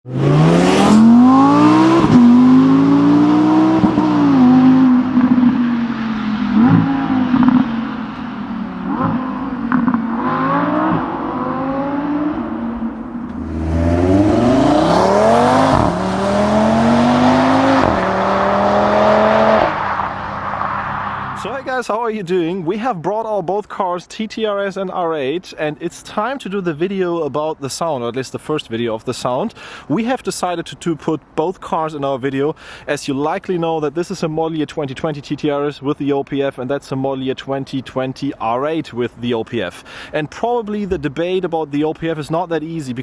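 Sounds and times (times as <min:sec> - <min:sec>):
car accelerating past: 0:00.1 - 0:21.4
car engine accelerating hard: 0:00.1 - 0:21.5.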